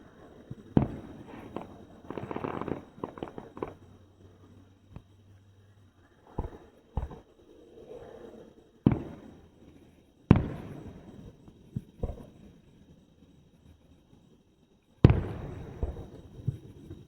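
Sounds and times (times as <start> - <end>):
fireworks booming: 0.0 - 4.4, 6.3 - 7.3, 8.8 - 12.4, 15.0 - 17.0.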